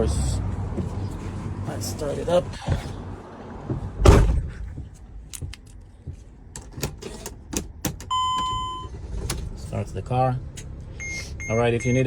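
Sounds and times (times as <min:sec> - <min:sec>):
heavy thump: 0:03.7 - 0:05.0
dashboard warning beep: 0:08.1 - 0:09.0, 0:11.0 - 0:12.0.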